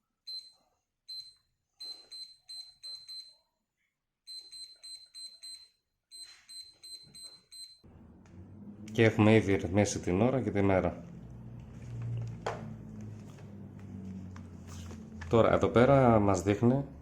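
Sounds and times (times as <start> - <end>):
alarm clock button beeps: 0.3 - 3.4, 4.3 - 7.9.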